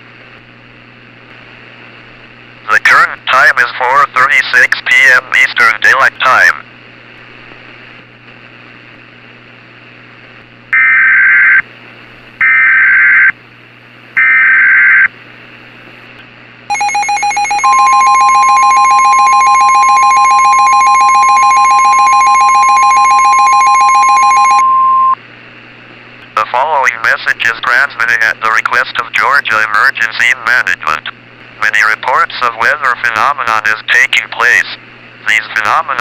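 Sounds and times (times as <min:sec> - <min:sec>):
steady weather radio warning tone: 0:02.7 - 0:06.6, 0:16.7 - 0:25.2, 0:26.4 - 0:36.0
pulsing electronic alert tone: 0:16.7 - 0:25.2.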